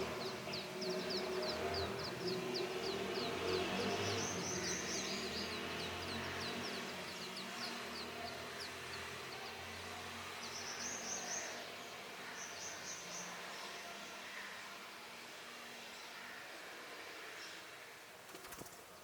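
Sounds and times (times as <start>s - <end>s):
nestlings chirping high and thin: 0.0s - 11.6s.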